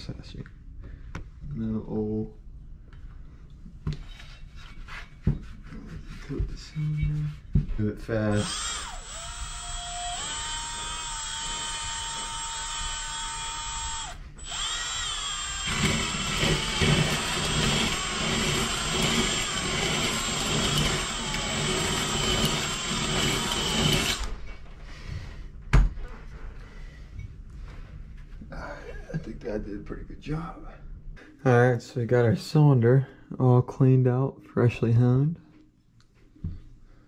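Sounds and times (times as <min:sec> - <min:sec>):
drill whining: 0:08.3 - 0:24.4.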